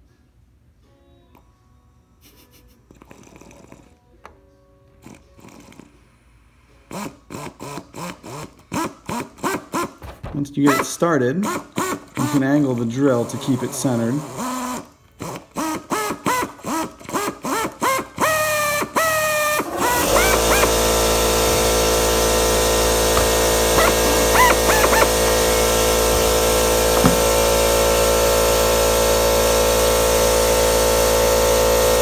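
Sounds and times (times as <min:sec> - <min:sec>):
air compressor drone: 0:05.0 - 0:32.0
pneumatic drill whining: 0:06.9 - 0:32.0.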